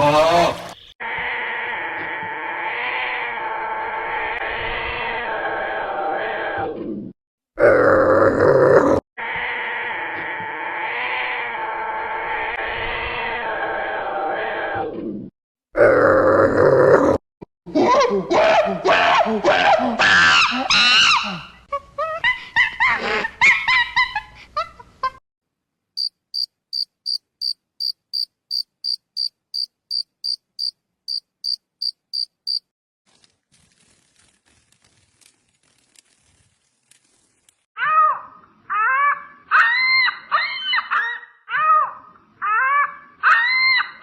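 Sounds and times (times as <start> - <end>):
dense pitched animal calls: 0.0 - 6.6, 9.2 - 14.8.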